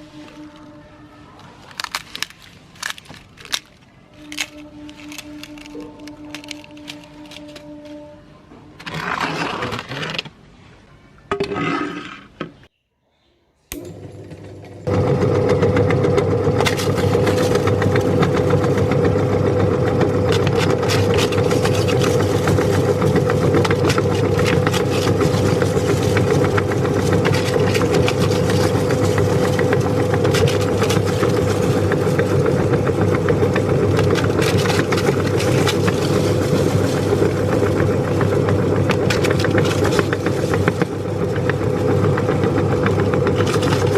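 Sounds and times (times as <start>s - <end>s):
crisp shells crackling: 0.0s - 8.1s, 16.6s - 43.9s
electric meat grinder motor hum: 13.7s - 43.9s.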